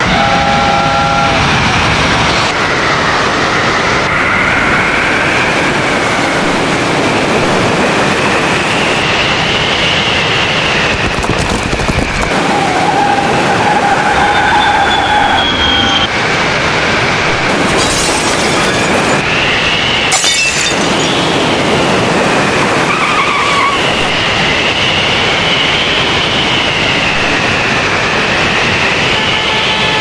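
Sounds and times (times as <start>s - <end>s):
storm rumbling roar: 0.0s - 30.0s
high wavering whistle: 14.1s - 16.1s.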